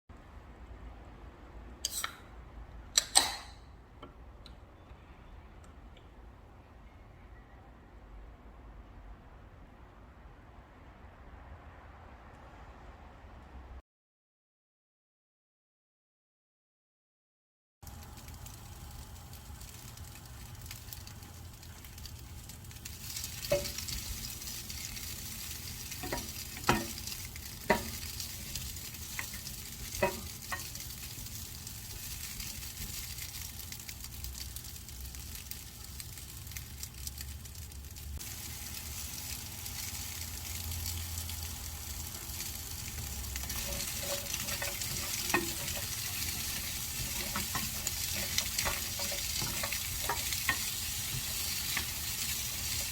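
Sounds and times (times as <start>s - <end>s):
food sizzling in a frying pan: 17.8s - 52.9s
utensil clicking against pan: 25.8s - 31.6s, 42.0s - 52.9s.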